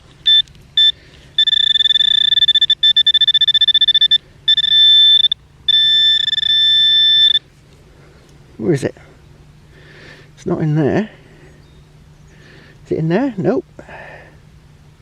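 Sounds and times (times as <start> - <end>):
metal detector probe beeping: 0.2 - 7.4.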